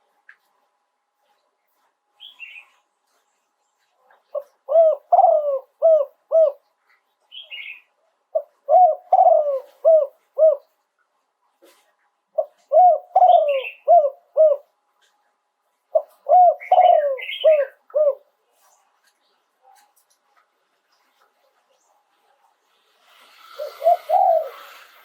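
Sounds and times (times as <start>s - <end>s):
dove cooing: 4.3s - 6.6s, 8.3s - 10.8s, 12.4s - 14.7s, 15.9s - 18.4s, 23.3s - 25.0s.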